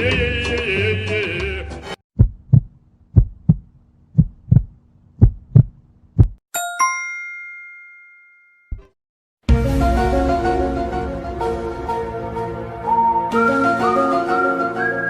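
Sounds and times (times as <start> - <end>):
heartbeat thumps: 2.2 - 6.4
two-note ding: 6.6 - 8.9.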